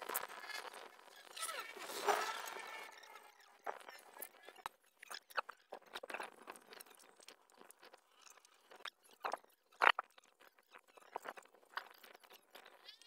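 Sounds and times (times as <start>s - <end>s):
short rattling scrapes: 1.4s - 3.2s.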